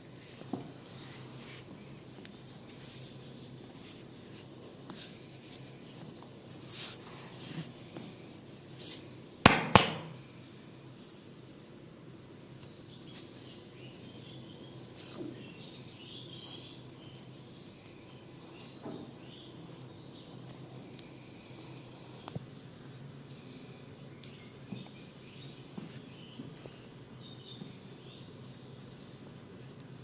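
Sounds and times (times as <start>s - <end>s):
sharp loud snaps: 9.4s - 10.2s.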